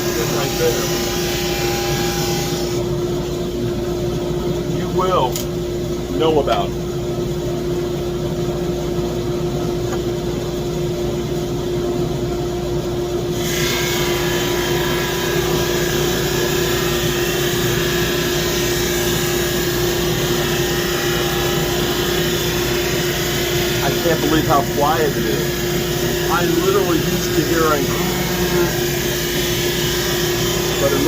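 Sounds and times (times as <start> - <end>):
sander motor hum: 14.0 - 31.0.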